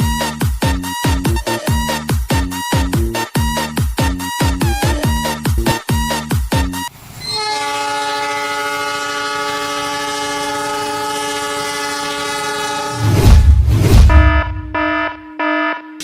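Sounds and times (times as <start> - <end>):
train horn chord: 7.2 - 13.2
loud low booms: 13.0 - 14.9.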